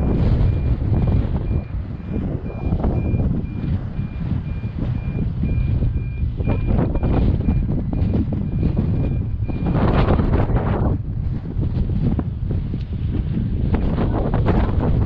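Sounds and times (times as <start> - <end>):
electronic alarm beeping: 0.0 - 9.9
low rumble: 0.0 - 15.0
wind noise on microphone: 0.0 - 15.0.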